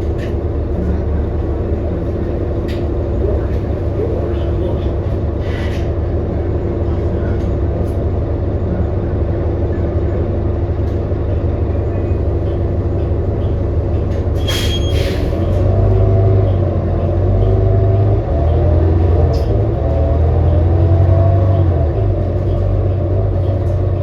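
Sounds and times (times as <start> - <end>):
bus engine drone with whining: 0.0 - 24.0
air brake hissing bursts: 14.4 - 15.5.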